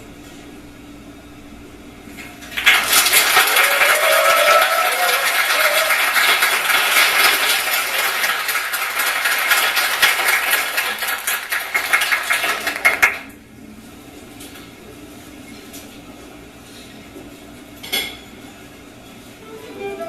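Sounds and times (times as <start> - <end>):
audience clapping: 2.5 - 13.4.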